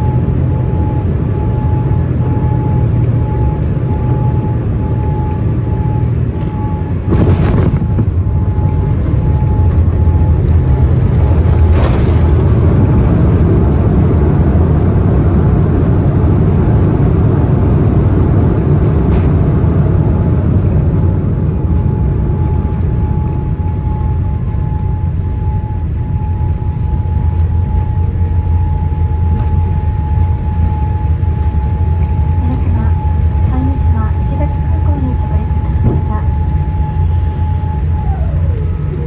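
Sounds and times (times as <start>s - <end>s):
jet cabin engine rumble: 0.0s - 39.0s.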